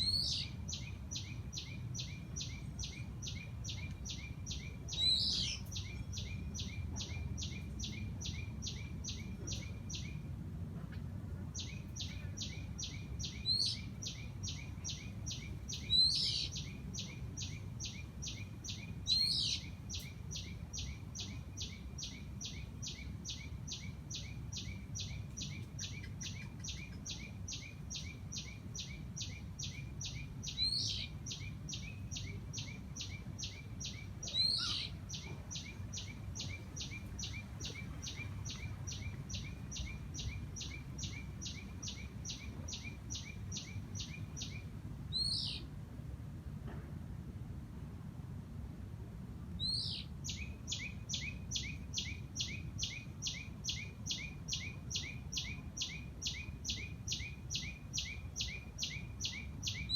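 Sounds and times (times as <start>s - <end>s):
low steady rumble: 0.0s - 59.9s
loud sharp bird calls: 11.6s - 45.6s
rapid pulsed bird trill: 11.6s - 45.6s.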